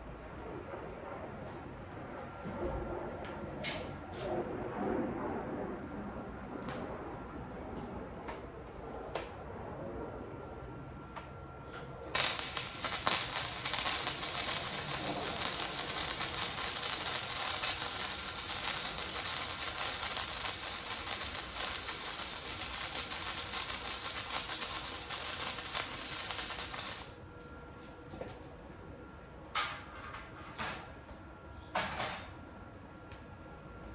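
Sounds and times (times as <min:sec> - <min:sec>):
welding arc crackling: 0:12.2 - 0:27.1.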